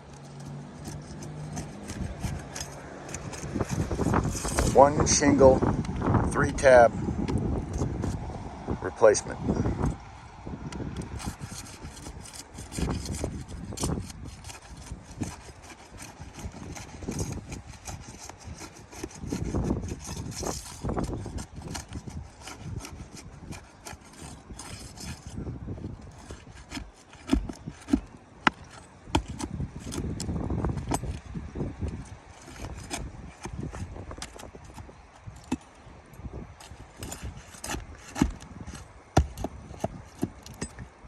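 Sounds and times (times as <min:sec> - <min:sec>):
scraping roof shingles: 0:00.0 - 0:05.5, 0:11.0 - 0:31.2.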